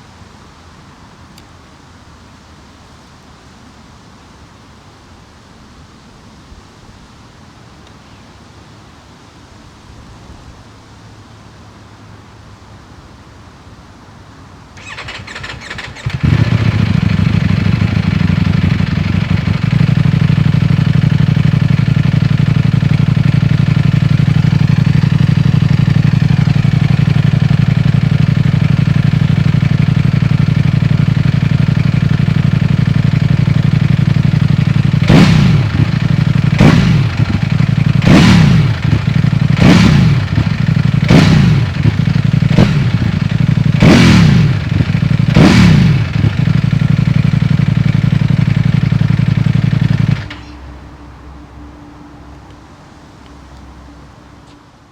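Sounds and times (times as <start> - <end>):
starter motor cranking: 14.8 - 17.1
engine revving: 14.8 - 20.6, 34.6 - 50.7
motorcycle engine idling: 14.8 - 51.4.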